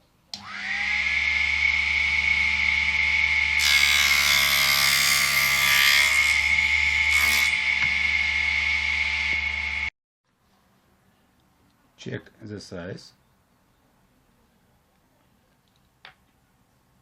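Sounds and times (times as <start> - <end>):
saw blade cutting wood: 0.4 - 9.9
table saw running: 0.4 - 9.9.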